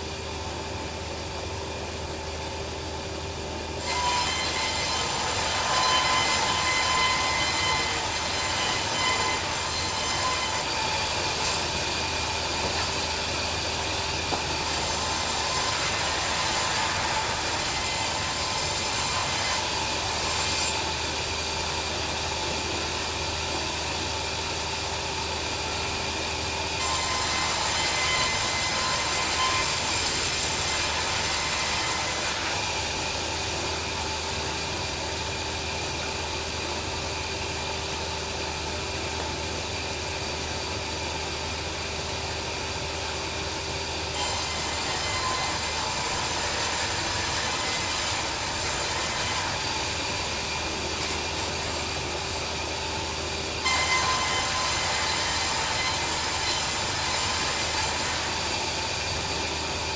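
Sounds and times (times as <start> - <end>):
saw blade rasping through timber: 44.2 - 52.8.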